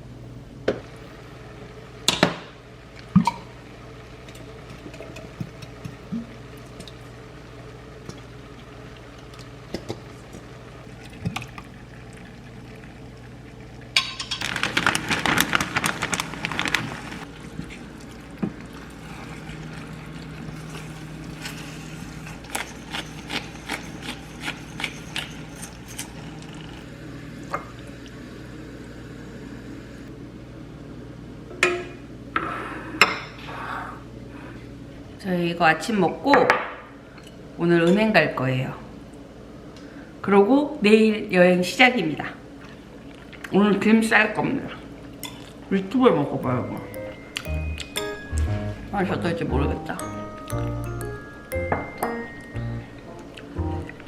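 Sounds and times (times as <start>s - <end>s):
liquid pouring: 8.0s - 26.7s
low hum: 46.4s - 54.0s
dishes clicking and tapping: 50.2s - 54.0s.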